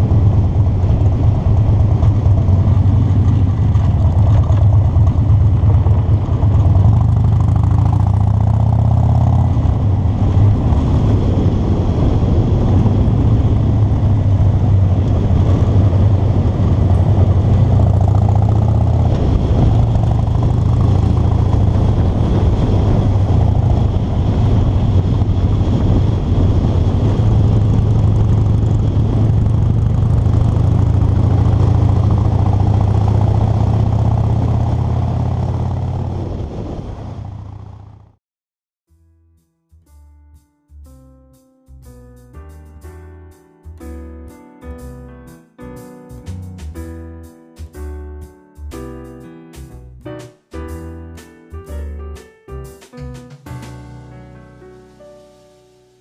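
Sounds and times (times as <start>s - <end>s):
car engine drone: 0.0s - 38.2s
road rumble: 0.0s - 38.2s, 45.8s - 55.8s.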